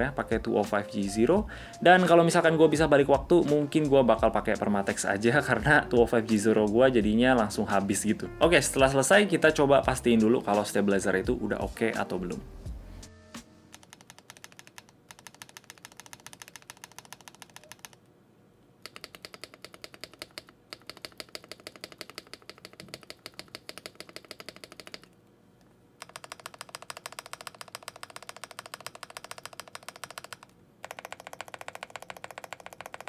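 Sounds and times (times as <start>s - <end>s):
keyboard stabilizer clacks: 18.9s - 25.1s, 26.0s - 33.0s.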